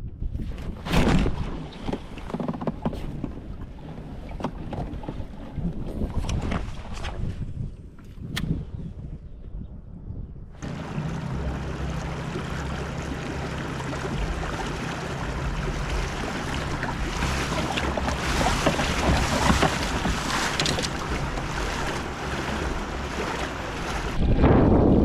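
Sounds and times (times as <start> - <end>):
wind buffeting microphone: 0.0 - 25.0
steady low hum: 9.6 - 24.8
small splashes and knocks: 10.6 - 24.2
water rushing and splashing: 10.6 - 24.9.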